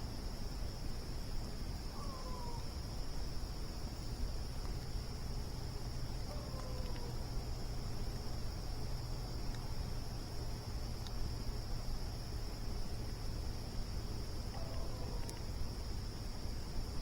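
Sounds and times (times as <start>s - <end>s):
crickets chirring: 0.0s - 17.0s.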